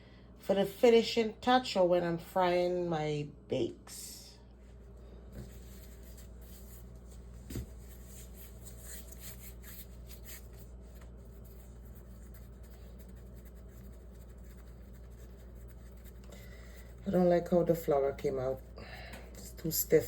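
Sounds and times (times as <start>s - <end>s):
steady low hum: 0.0s - 20.0s
hands rubbing bread dough: 5.3s - 20.0s.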